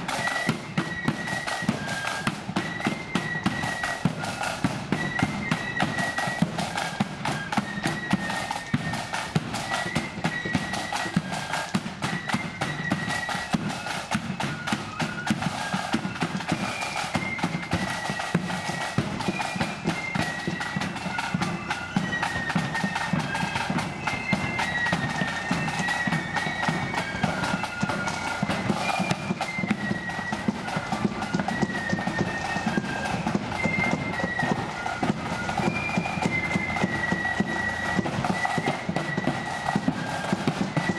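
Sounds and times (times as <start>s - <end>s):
drums: 0.0s - 40.9s
marching band playing: 0.0s - 40.9s.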